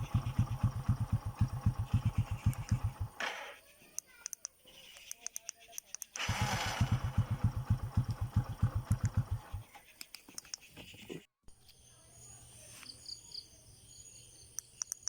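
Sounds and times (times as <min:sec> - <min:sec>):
motorcycle engine idling: 0:00.0 - 0:03.5, 0:06.2 - 0:09.8.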